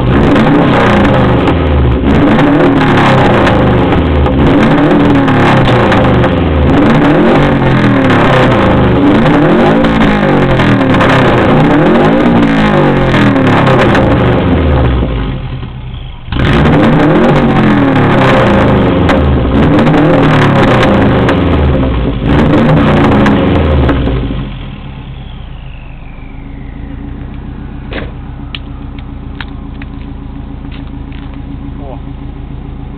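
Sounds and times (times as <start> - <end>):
car engine revving loudly: 0.0 - 32.2
car engine idling: 0.0 - 32.9
faint falling turbo whine: 23.9 - 32.9.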